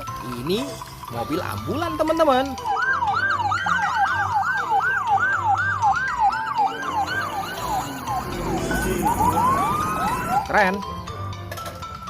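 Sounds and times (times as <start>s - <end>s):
ambulance siren yelping: 1.6s - 11.0s.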